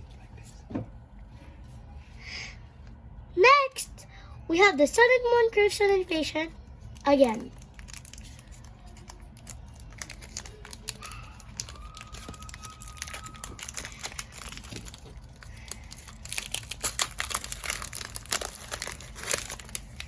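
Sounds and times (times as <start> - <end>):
foil wrapper crinkling and tearing: 7.0 - 20.0.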